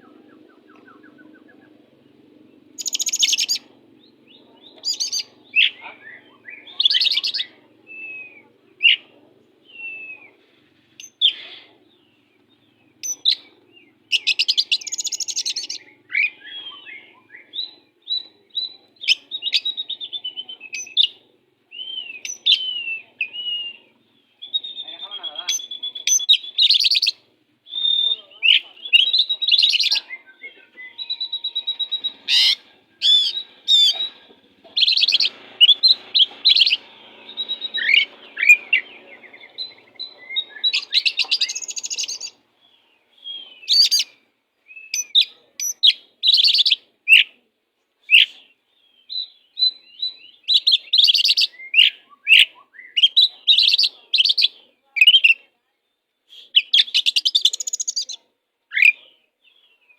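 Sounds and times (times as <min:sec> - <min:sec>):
bird singing whistles and trills: 0:02.7 - 0:03.6, 0:12.6 - 0:34.2, 0:34.8 - 0:47.3, 0:48.1 - 0:55.4.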